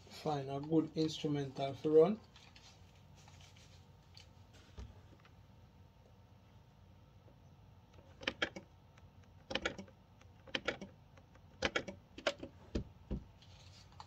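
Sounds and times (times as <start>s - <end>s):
laptop keys typing: 8.0s - 12.5s.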